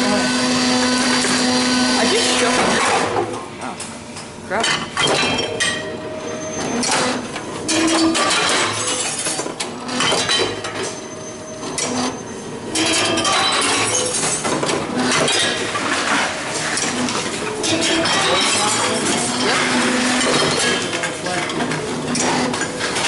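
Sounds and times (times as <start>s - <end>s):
glass bottles clinking: 17.6s - 21.5s.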